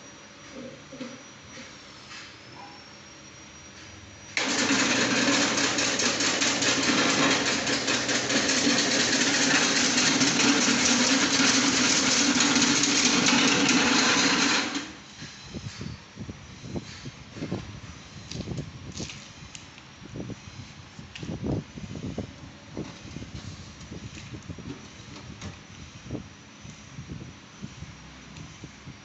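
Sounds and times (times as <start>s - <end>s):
slicing machine motor chattering: 4.4s - 15.0s.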